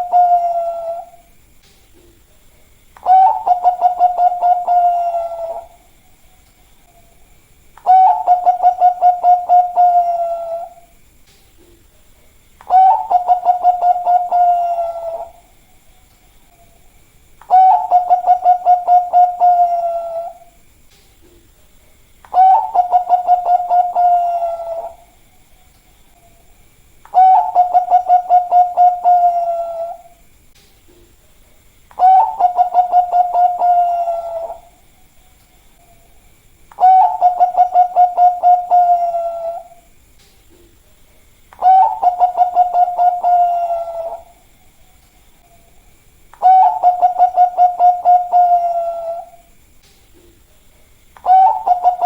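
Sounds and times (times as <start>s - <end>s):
dove cooing song: 0.0s - 1.3s, 3.0s - 5.9s, 7.8s - 10.9s, 12.6s - 15.6s, 17.4s - 20.6s, 22.3s - 25.2s, 27.1s - 30.2s, 31.9s - 34.8s, 36.7s - 39.9s, 41.5s - 44.5s, 46.4s - 49.5s, 51.2s - 52.0s.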